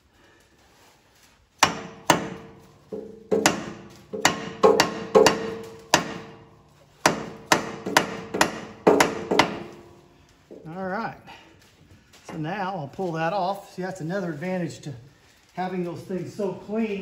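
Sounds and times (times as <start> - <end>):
hammer striking metal driver: 1.6 - 10.0.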